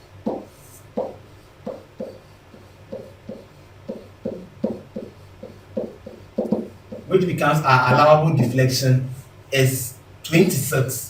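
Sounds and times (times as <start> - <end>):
faint steady hum: 0.0 - 11.0
short irregular taps: 0.2 - 7.1.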